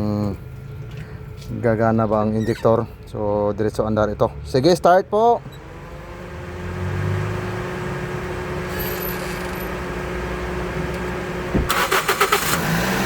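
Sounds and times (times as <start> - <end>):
engine cranked by starter: 10.4 - 13.0
engine starting and revving: 11.6 - 13.0.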